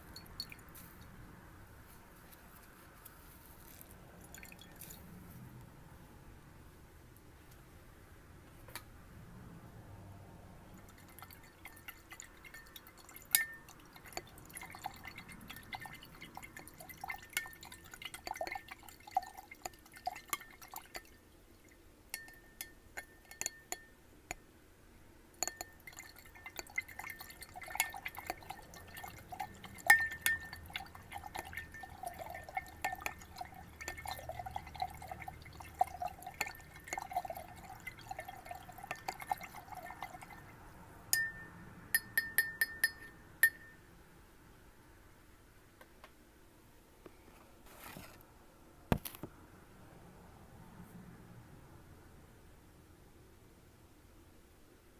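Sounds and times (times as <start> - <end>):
water dripping and sloshing: 4.2 - 5.1, 10.7 - 21.8, 25.8 - 40.7.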